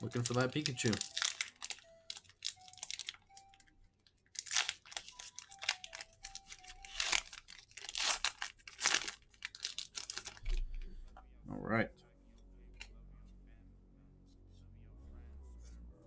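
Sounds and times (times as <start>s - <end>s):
foil wrapper tearing and crinkling: 0.0s - 3.5s, 4.2s - 10.8s.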